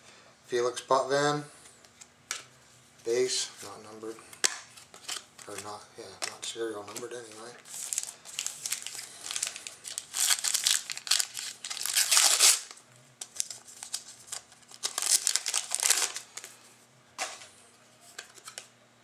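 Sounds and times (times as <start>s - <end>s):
wrapper crinkling and tearing: 6.9s - 16.6s.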